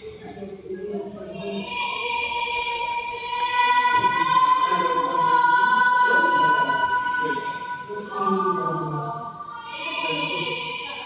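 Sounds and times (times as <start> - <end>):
operatic singing high note: 1.7 - 11.0.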